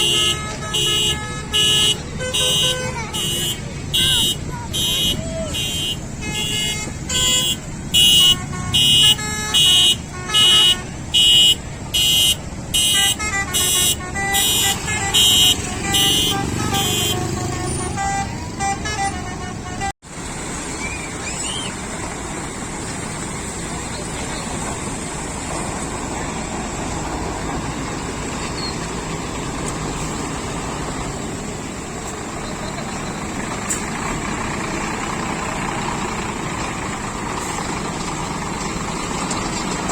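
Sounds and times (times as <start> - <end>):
lorry musical horns playing: 0.0 - 20.0.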